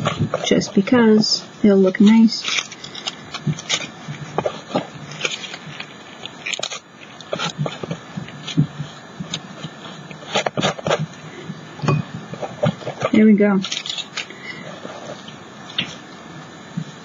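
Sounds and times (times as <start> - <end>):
tissue paper rustling: 0.0 - 11.2, 12.3 - 16.1.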